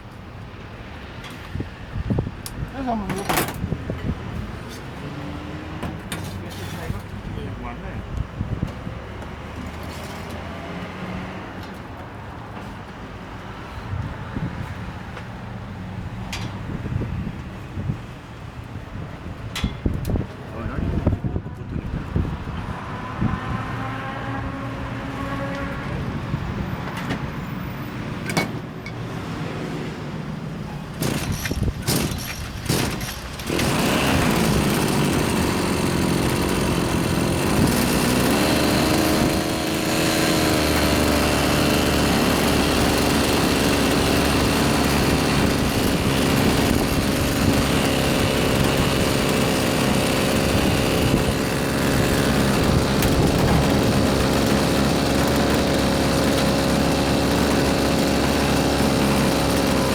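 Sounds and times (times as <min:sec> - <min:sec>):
sharp clicks and knocks: 0:30.7 - 0:36.7
brush cutter engine running: 0:31.0 - 0:59.9.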